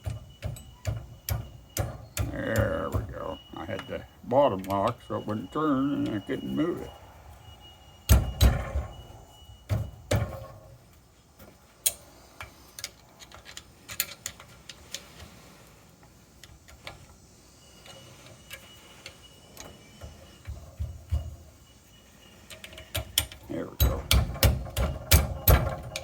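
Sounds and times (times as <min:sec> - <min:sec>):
metal parts clicking and knocking: 0:00.0 - 0:03.9, 0:11.4 - 0:15.4, 0:22.3 - 0:26.0.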